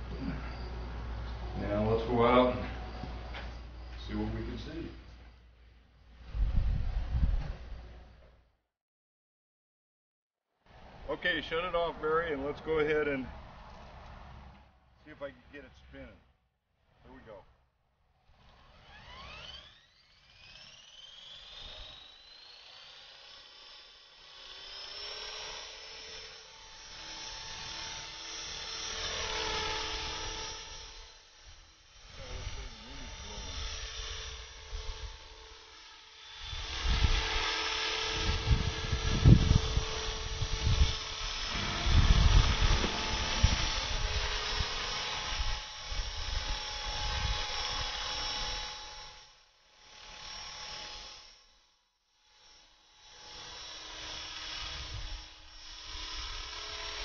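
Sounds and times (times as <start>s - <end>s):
rc helicopter motor whine: 0.0s - 5.2s, 18.3s - 57.0s.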